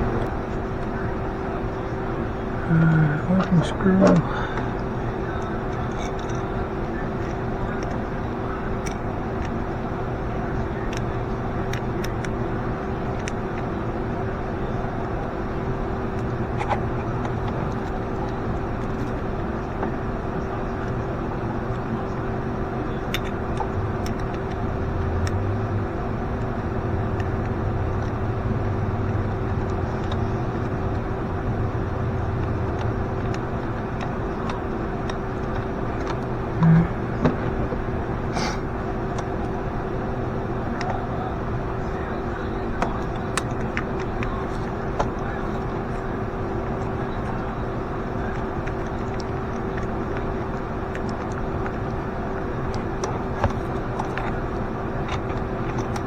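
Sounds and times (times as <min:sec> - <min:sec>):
mechanical hum: 0:00.0 - 0:56.0
light clicks and taps: 0:07.2 - 0:08.0.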